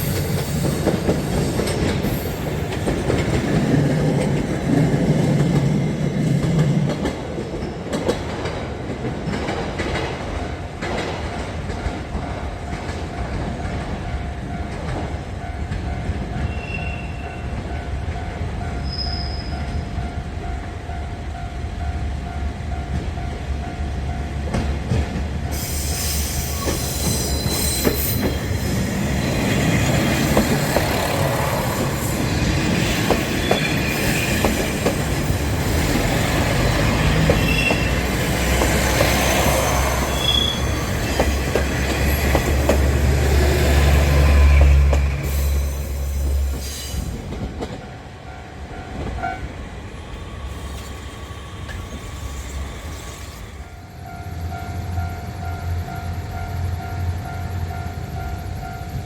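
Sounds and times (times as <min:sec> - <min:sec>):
railcar low drone: 0:00.0 - 0:59.0
train wheels rumbling over rails: 0:00.0 - 0:59.0
thin wheel squeal: 0:25.6 - 0:28.8.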